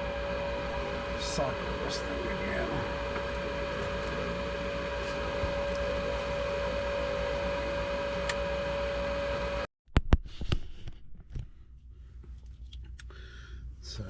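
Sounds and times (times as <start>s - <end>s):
furnace motor humming: 0.0s - 9.7s.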